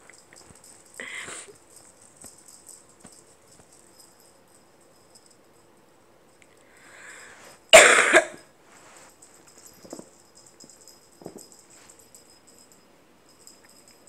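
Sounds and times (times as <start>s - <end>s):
person coughing: 7.7s - 8.4s.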